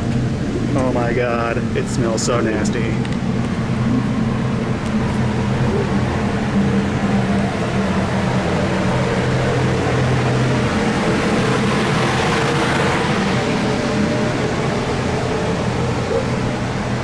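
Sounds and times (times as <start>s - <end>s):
ventilation fan running: 0.0s - 17.0s.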